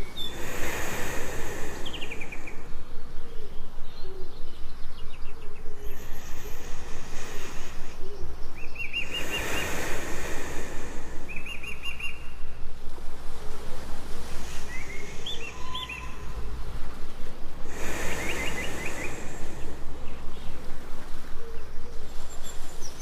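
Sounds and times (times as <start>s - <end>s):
birds calling: 0.0s - 12.9s, 14.2s - 23.0s
rushing water: 8.8s - 12.0s, 13.6s - 21.3s.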